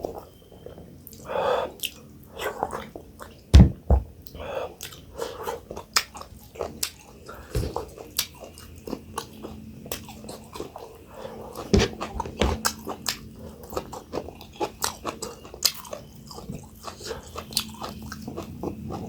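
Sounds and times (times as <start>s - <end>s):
chewing and mouth smacking: 4.8s - 10.9s, 11.5s - 19.0s.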